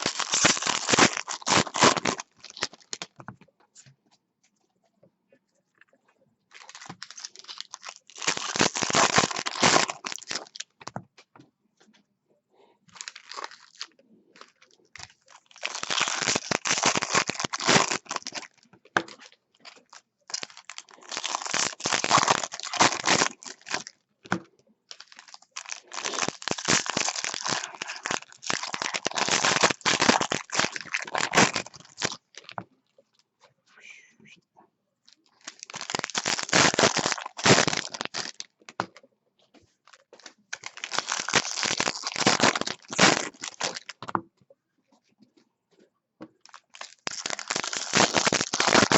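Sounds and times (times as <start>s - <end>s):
foil wrappers tearing and crinkling: 0.0s - 3.2s, 6.5s - 10.8s, 12.9s - 18.7s, 19.7s - 23.9s, 24.9s - 32.6s, 35.3s - 38.5s, 39.9s - 44.0s, 46.4s - 48.9s.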